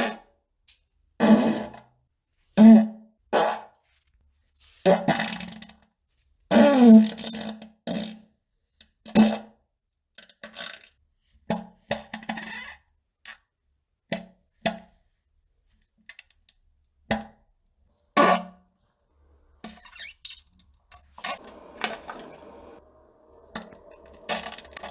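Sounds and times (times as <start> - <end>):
dense noisy sound: 19.1 - 24.9.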